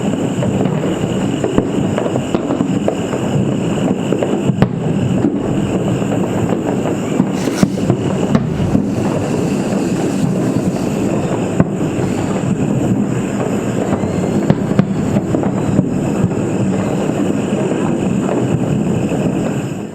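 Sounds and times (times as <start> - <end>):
distant firecrackers rumbling: 0.0 - 19.9
sharp firecracker pops: 0.0 - 19.9.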